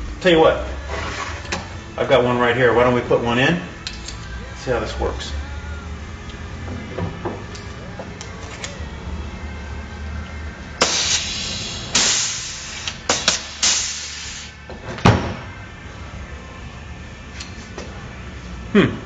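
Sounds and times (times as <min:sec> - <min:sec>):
rivet gun air hiss: 0:10.8 - 0:14.6.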